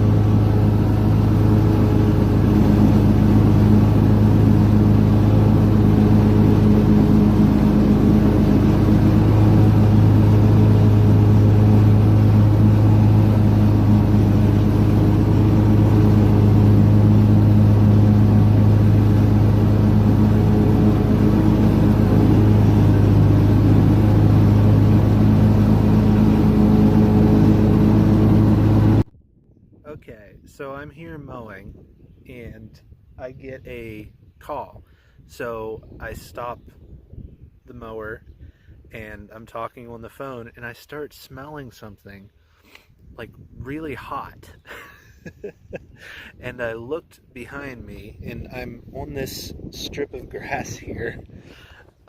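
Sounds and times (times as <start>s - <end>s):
riding lawn mower engine running: 0.0s - 29.1s.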